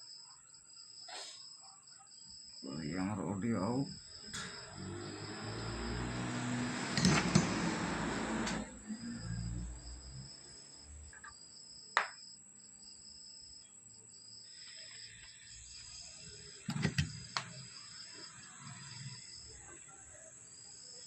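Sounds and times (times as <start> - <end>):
cricket chirping: 0.0 - 6.3, 8.6 - 21.0
sharp clicks: 6.8 - 8.7.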